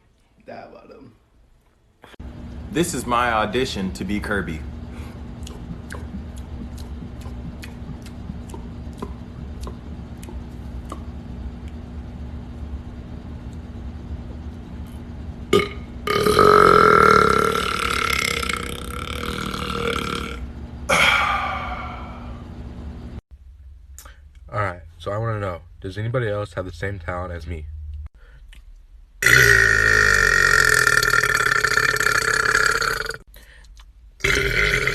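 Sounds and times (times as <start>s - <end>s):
low hum: 1.1s - 34.9s
man burping: 15.5s - 22.1s, 29.2s - 33.2s, 34.2s - 34.9s.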